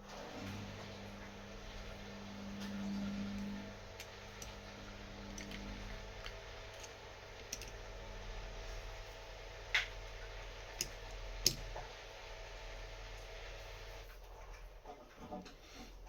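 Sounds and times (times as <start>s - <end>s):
faint steady hum: 0.0s - 16.0s
small metal lock parts clicking: 6.2s - 7.8s.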